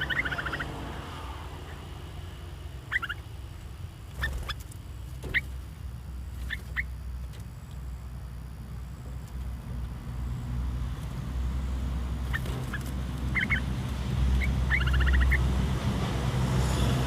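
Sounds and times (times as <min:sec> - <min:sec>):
birds chirping: 0:00.0 - 0:09.9, 0:11.0 - 0:17.0
steady low rumble: 0:00.0 - 0:17.0.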